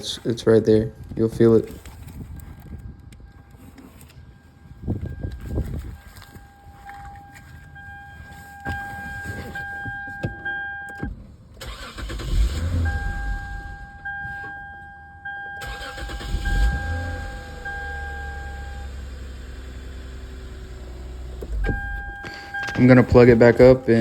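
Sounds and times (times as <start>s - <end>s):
car engine idling: 3.3s - 24.0s
car engine cranking and starting: 8.2s - 24.0s
dashboard chime: 21.6s - 24.0s.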